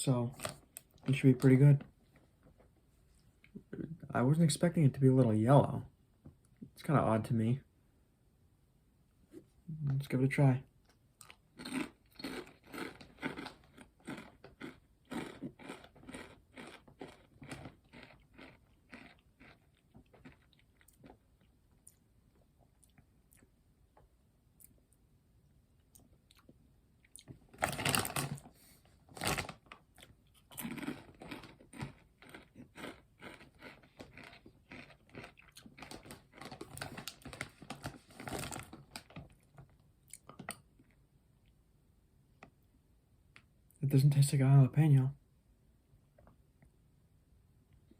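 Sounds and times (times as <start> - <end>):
chewing crunchy potato chips: 11.2 - 23.6, 25.8 - 28.4, 29.1 - 41.0.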